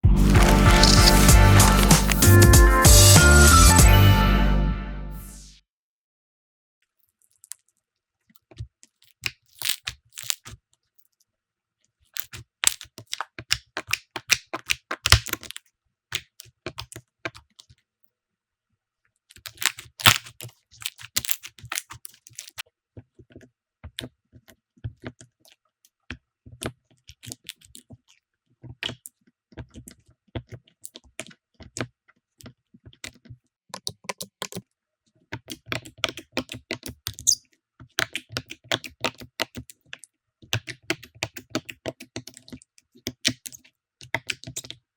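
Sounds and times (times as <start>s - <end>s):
slime crackling and popping: 0.2s - 2.4s, 9.1s - 10.6s, 12.2s - 16.9s, 19.4s - 22.6s.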